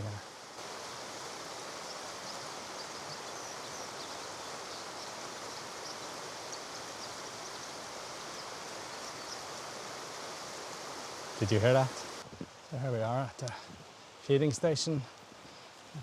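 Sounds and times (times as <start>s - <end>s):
stream water flowing: 0.0s - 12.8s
songbirds chirping: 0.0s - 14.2s.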